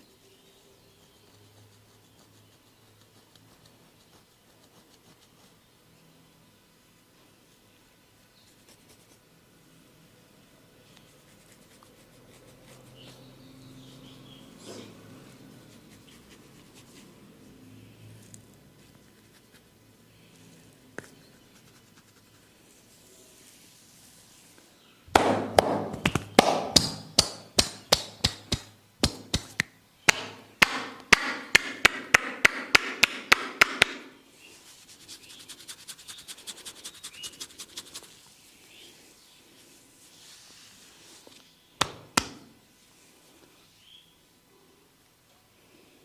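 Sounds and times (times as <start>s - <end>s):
hands slapping a head: 25.1s - 34.1s, 41.8s - 42.6s.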